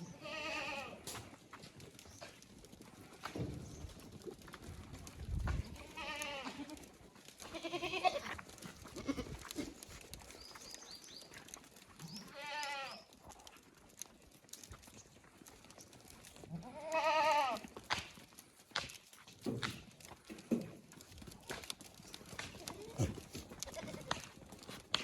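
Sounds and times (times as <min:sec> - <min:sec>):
goats bleating: 0:00.0 - 0:01.1, 0:05.7 - 0:09.9, 0:12.2 - 0:13.1, 0:16.5 - 0:17.7, 0:22.4 - 0:24.4.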